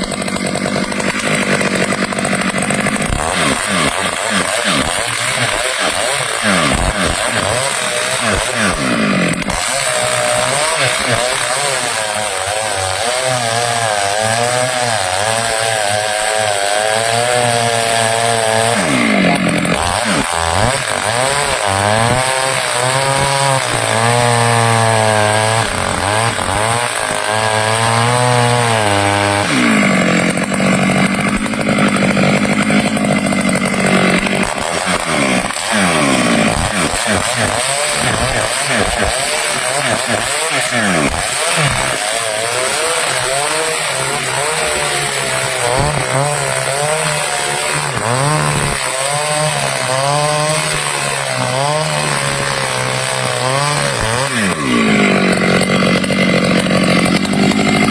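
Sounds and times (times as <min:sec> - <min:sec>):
chainsaw cutting wood: 0:00.0 - 0:57.9.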